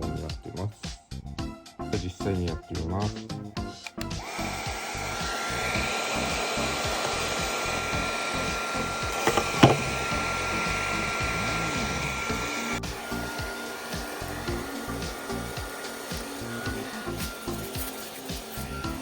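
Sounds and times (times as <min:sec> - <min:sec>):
sharp clicks: 0:03.7 - 0:04.2
heat gun fan whining: 0:03.8 - 0:19.0.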